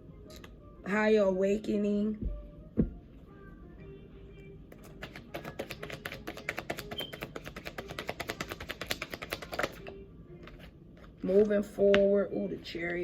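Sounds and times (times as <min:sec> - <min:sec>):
cards being shuffled: 0:04.7 - 0:11.2.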